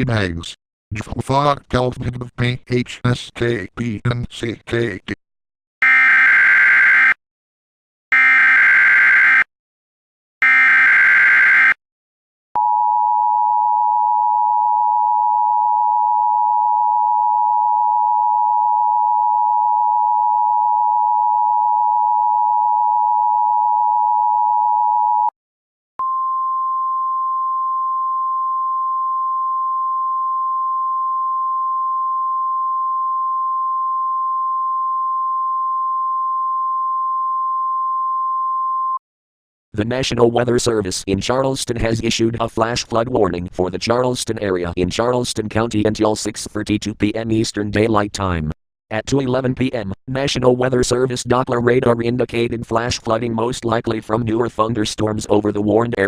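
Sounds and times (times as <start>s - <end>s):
steady warning alarm tone: 5.8s - 7.2s, 8.1s - 9.5s, 10.4s - 11.8s.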